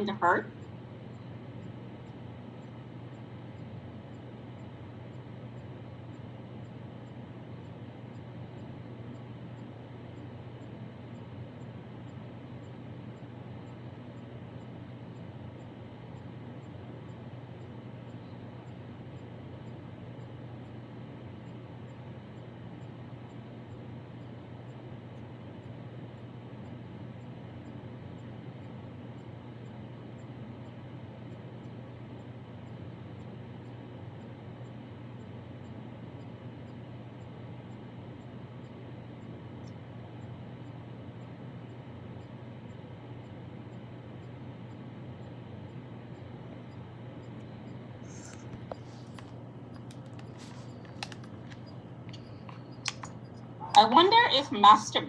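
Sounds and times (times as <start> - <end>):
sharp clicks: 48.2 - 53.9.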